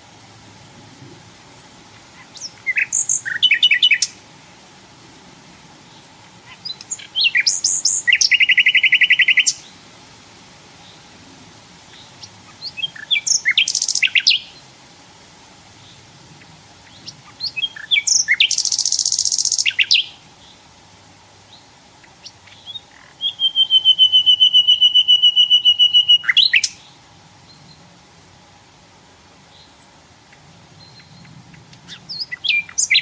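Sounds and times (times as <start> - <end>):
nightingale singing: 1.4 - 4.3, 5.1 - 9.9, 11.8 - 14.8, 15.8 - 20.8, 21.4 - 27.9, 29.5 - 33.0.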